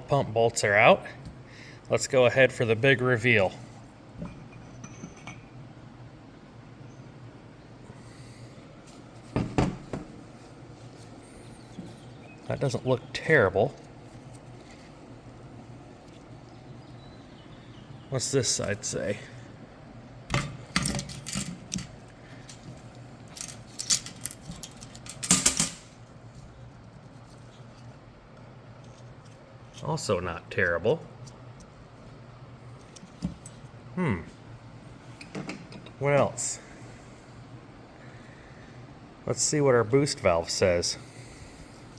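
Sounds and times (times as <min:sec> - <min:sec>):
low steady hum: 0:00.0 - 0:41.9
metal parts clinking: 0:20.4 - 0:26.0.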